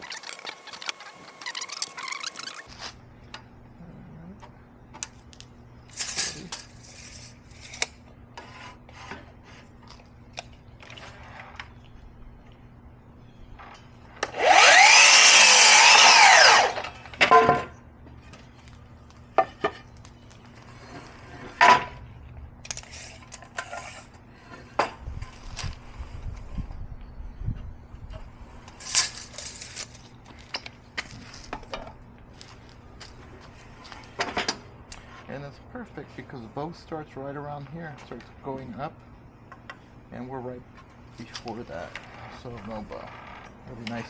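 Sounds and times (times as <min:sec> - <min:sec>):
steady low hum: 0:00.0 - 0:14.3
power saw cutting wood: 0:14.2 - 0:17.1.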